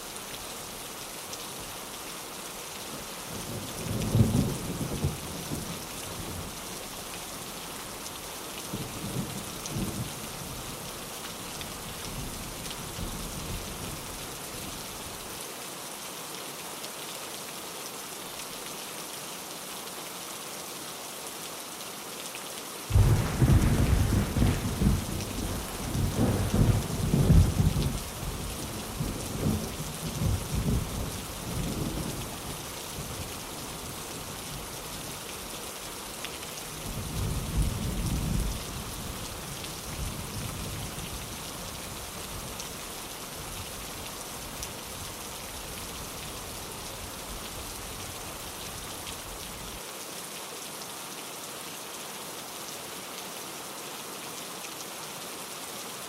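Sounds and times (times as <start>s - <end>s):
steady rain: 0.0s - 56.0s
thunder rumbling: 22.9s - 30.9s.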